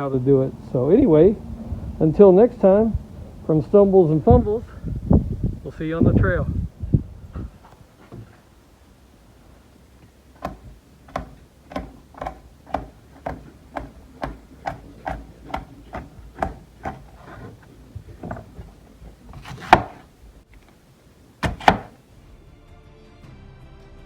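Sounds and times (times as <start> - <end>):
short knocks: 7.3 - 20.8, 21.4 - 22.0
loud sharp knocks: 10.4 - 20.1, 21.4 - 22.0.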